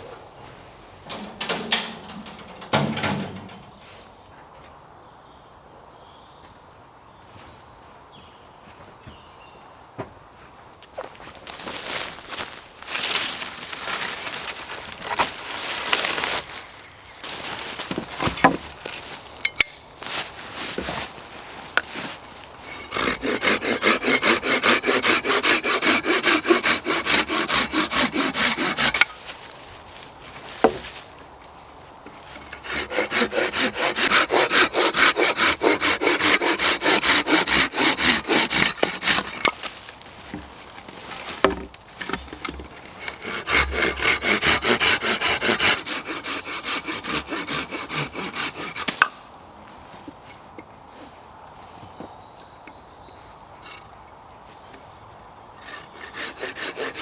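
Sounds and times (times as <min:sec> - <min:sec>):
knocks and rustles: 0:01.0 - 0:03.8, 0:17.3 - 0:22.9, 0:28.9 - 0:31.3, 0:38.6 - 0:43.8
hand saw cutting wood: 0:17.6 - 0:19.0, 0:21.9 - 0:29.3, 0:30.5 - 0:31.0, 0:32.2 - 0:49.2, 0:55.6 - 0:57.0.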